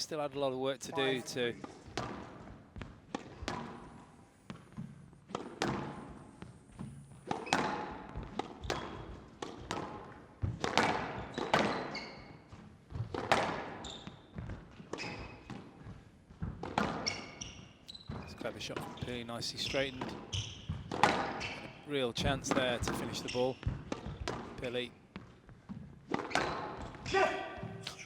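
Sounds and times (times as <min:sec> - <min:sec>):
shoes squeaking on court floor: 0:01.0 - 0:28.0
squash ball hitting rackets and walls: 0:01.6 - 0:28.0.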